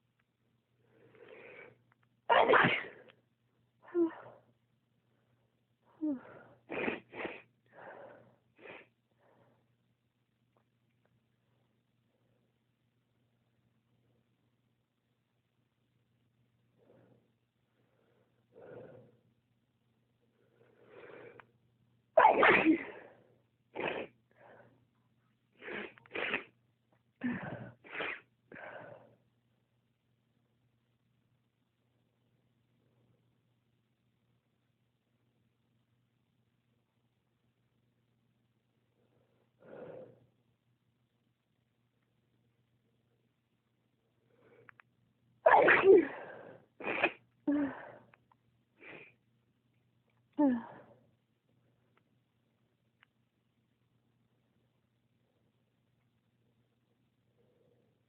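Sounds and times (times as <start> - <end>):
woman breathing: 0.8 - 1.9, 7.6 - 9.8, 16.7 - 19.3, 20.2 - 21.6, 28.5 - 29.2, 39.0 - 40.4
woman sneezing: 2.3 - 3.0, 6.7 - 7.5, 22.2 - 23.1, 23.8 - 24.1, 25.6 - 26.5, 45.5 - 47.9.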